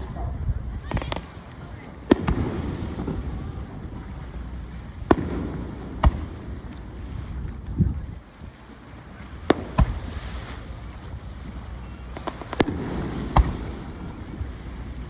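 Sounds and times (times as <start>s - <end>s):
fireworks bangs and booms: 0.0s - 15.0s
steady low rumble: 0.0s - 15.0s.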